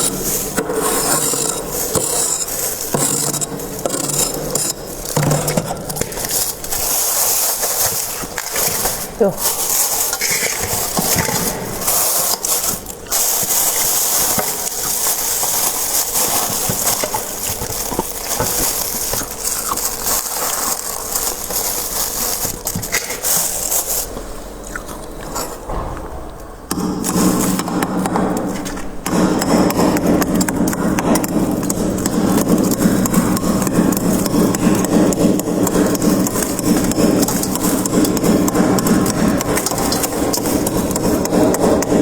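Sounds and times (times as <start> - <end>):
crunching and scraping frost: 0.0 - 25.9.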